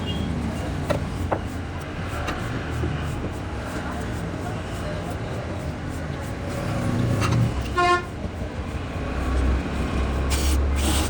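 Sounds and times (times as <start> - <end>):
road traffic rumble: 0.0 - 11.0
vehicle horn toot: 7.7 - 8.1.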